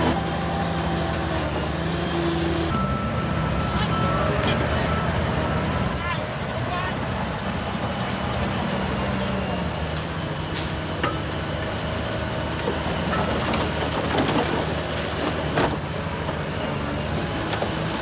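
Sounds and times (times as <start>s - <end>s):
diesel machinery running: 0.0s - 18.0s.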